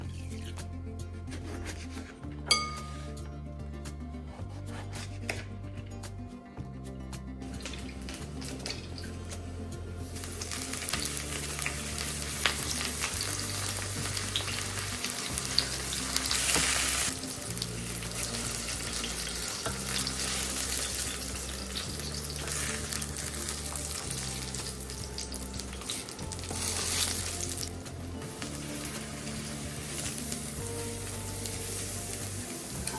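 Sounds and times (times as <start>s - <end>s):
food sizzling in hot oil: 7.4s - 32.9s.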